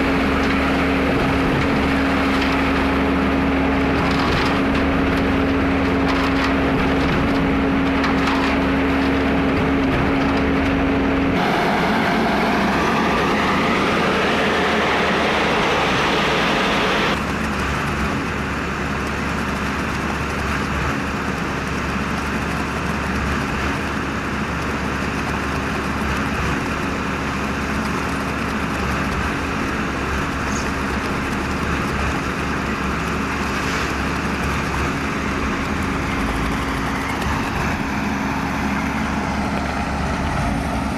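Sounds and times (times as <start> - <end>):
concrete mixer pump engine: 0.0 - 40.9.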